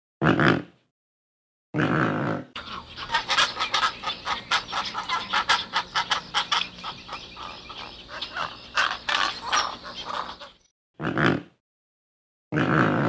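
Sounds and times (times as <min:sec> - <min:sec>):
low steady hum: 0:02.6 - 0:10.6
pelicans calling: 0:02.6 - 0:10.6.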